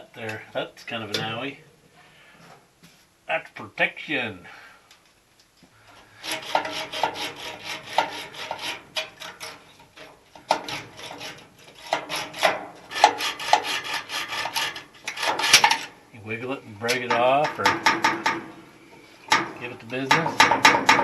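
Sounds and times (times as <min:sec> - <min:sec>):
metal ringing faintly: 0:01.1 - 0:02.0
hand tool rasping metal: 0:06.2 - 0:15.9, 0:19.3 - 0:21.0.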